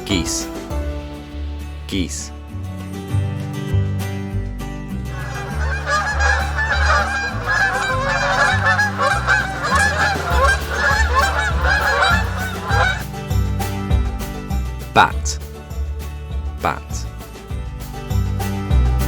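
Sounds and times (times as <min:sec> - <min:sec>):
waterfowl honking and quacking: 0:05.2 - 0:13.0.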